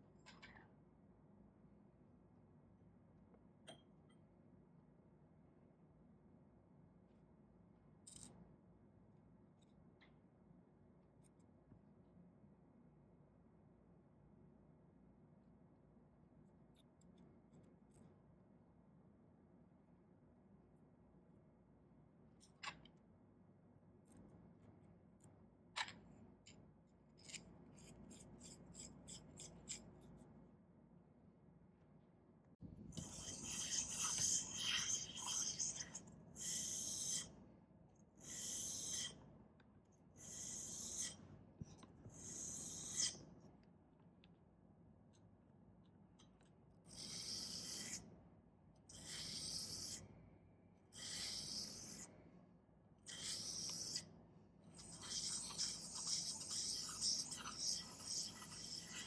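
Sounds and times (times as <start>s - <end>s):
blade rubbing on sharpening stone: 27.2s - 30.0s, 33.0s - 37.3s, 38.2s - 39.2s, 40.2s - 41.2s, 42.0s - 43.2s, 46.9s - 48.0s, 48.9s - 50.0s, 50.9s - 52.1s, 53.1s - 54.1s, 54.7s - 59.0s.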